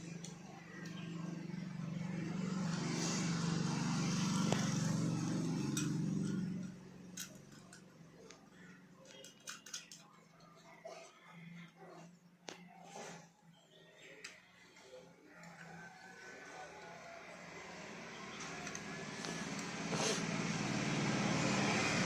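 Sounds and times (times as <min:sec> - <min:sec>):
low mechanical drone: 0:00.0 - 0:09.0, 0:16.8 - 0:22.0.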